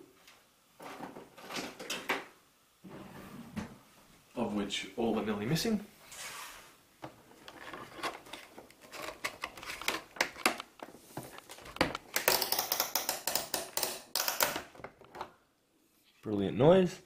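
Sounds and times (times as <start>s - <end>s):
plastic clicks and cracks: 8.0s - 15.3s.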